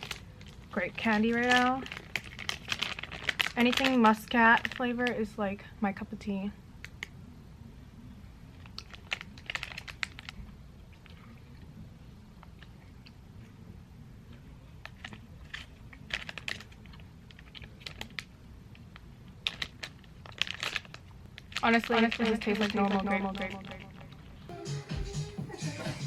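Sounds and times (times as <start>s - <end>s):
plastic candy packet crackling: 0.0s - 5.2s, 8.5s - 10.4s, 14.8s - 24.3s.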